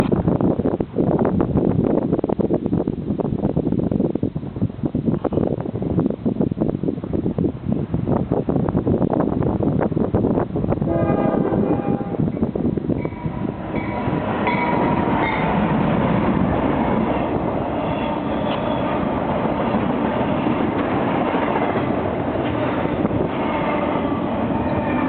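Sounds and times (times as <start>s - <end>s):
train wheels rumbling on rail: 0.0s - 25.0s
train horn chord: 10.9s - 12.3s.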